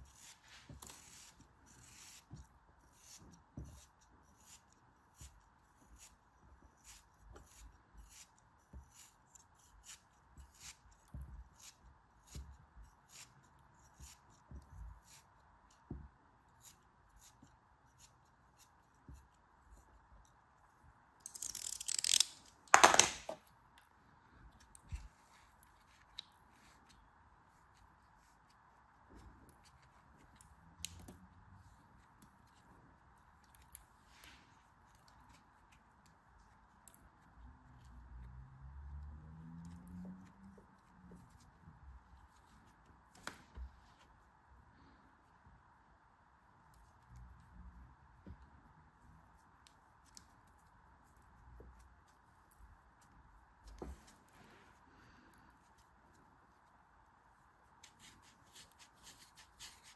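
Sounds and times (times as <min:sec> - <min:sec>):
packaging tearing and crinkling: 0:21.3 - 0:23.3.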